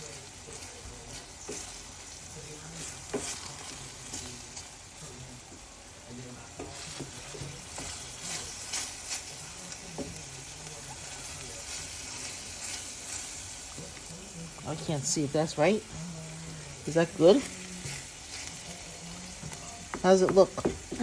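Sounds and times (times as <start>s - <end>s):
meat sizzling in a frying pan: 0.0s - 21.0s
utensil scraping a pan: 2.6s - 4.6s, 6.6s - 13.9s.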